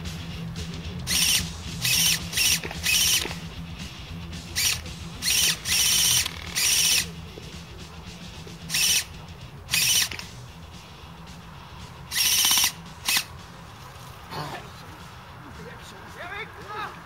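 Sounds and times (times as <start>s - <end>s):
airsoft guns firing bursts: 1.1s - 3.4s, 9.7s - 10.4s, 12.1s - 13.3s.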